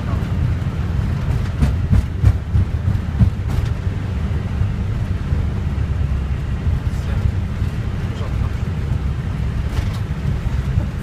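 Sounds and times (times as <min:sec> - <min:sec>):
airliner rolling low rumble: 0:00.0 - 0:11.0
knocks and rattles: 0:01.1 - 0:03.8.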